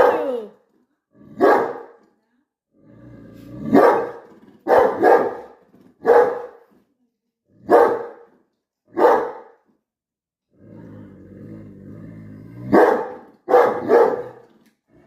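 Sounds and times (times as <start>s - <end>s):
dog barking: 1.4s - 2.0s, 3.7s - 6.6s, 7.7s - 8.3s, 8.9s - 9.6s, 12.7s - 14.4s.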